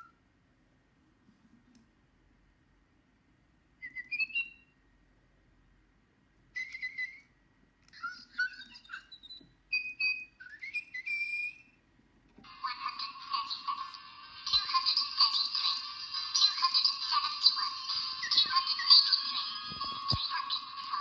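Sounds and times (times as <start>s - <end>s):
toy bird chirping electronically: 3.8s - 4.7s, 6.6s - 7.3s, 7.9s - 11.8s, 12.6s - 21.0s.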